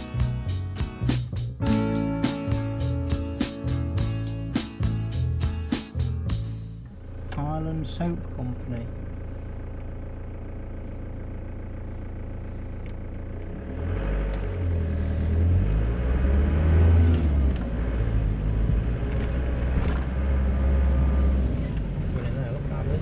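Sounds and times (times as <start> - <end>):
road noise: 0.0 - 9.8, 11.4 - 23.0
van engine hum: 0.0 - 23.0.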